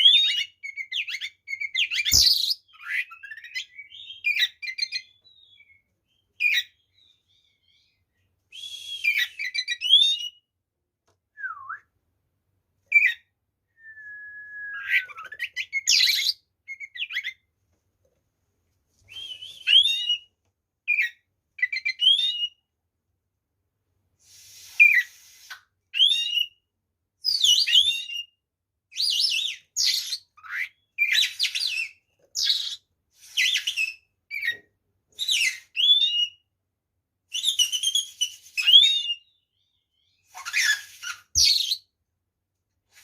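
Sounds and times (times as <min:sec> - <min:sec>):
bird singing whistled phrases: 0:08.5 - 0:10.4, 0:11.4 - 0:11.9, 0:13.0 - 0:17.3, 0:19.1 - 0:20.3, 0:20.9 - 0:22.6.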